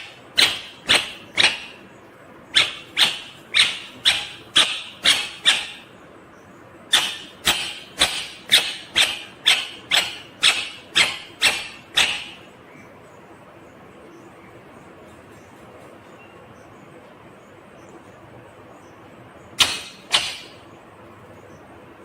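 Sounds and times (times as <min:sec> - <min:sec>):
parakeet harsh squawks: 0:00.0 - 0:01.8, 0:02.5 - 0:05.9, 0:06.9 - 0:12.5, 0:19.6 - 0:20.6.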